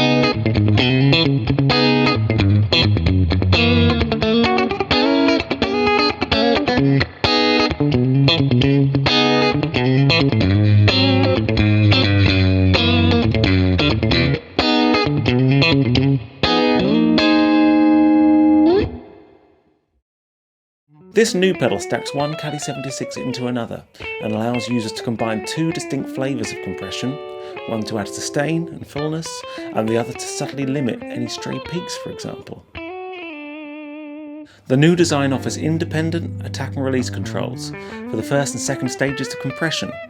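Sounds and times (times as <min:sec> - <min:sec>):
electric guitar notes: 0:00.0 - 0:19.2, 0:20.9 - 0:23.5, 0:24.1 - 0:32.2, 0:32.8 - 0:40.0
low bass line: 0:34.7 - 0:38.3.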